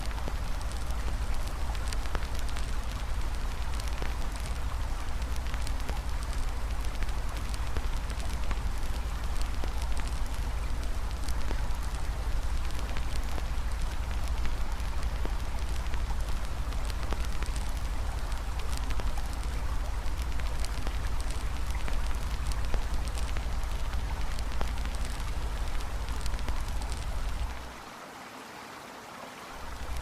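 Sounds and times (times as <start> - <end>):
campfire crackling and popping: 0.0 - 27.8, 29.6 - 30.0
river flowing: 0.0 - 30.0.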